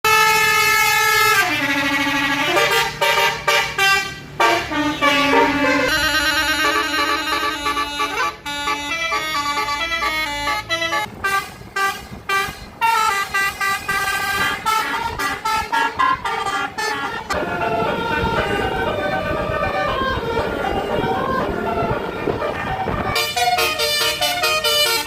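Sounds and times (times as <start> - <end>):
multi-tone bus horn melody: 0.0 - 25.0
low rumbling noise: 4.1 - 23.3.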